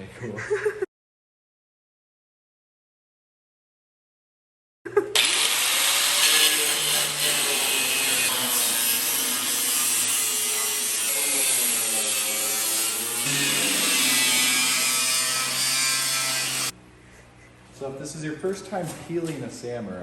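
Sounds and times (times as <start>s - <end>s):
power saw cutting sheet metal: 5.2s - 16.7s.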